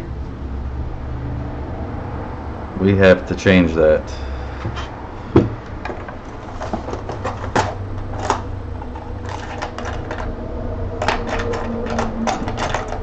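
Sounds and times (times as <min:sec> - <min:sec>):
sharp clicks and light knocks: 0:11.0 - 0:13.0.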